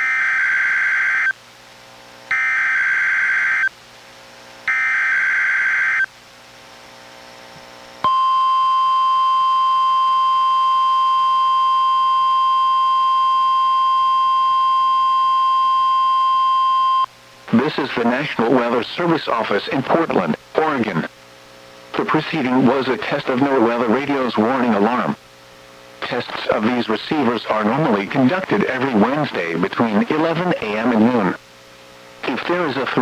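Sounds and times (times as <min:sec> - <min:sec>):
steady warning alarm tone: 0:02.3 - 0:03.7, 0:04.7 - 0:06.1, 0:08.0 - 0:17.1.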